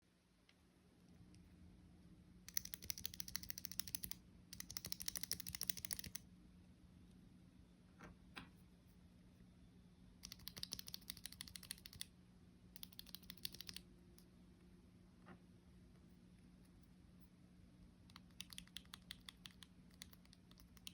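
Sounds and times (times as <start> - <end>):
fast typing on mechanical keyboard: 2.5 - 6.2, 10.2 - 12.1, 12.8 - 13.9, 18.1 - 20.9.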